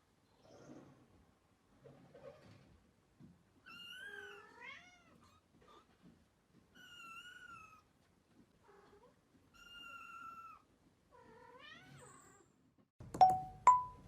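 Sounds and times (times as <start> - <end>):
cat meowing faintly: 8.6 - 12.5.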